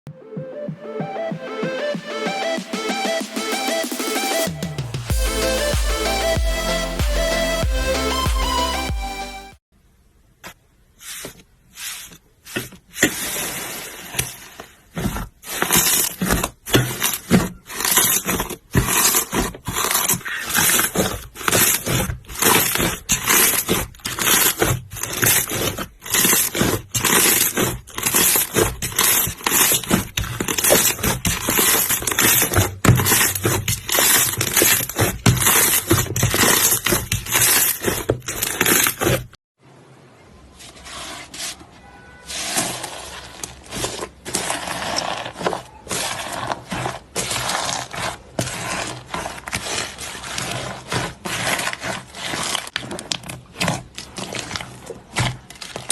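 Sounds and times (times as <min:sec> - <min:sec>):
slime squishing by hand: 0:10.4 - 0:39.4, 0:40.5 - 0:55.9.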